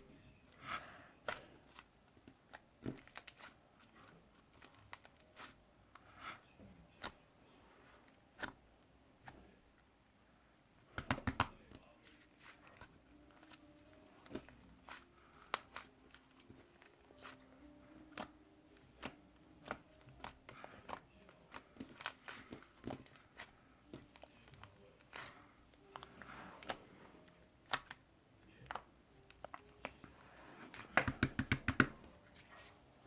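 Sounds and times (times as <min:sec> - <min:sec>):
small clicks and taps: 0:30.8 - 0:32.0.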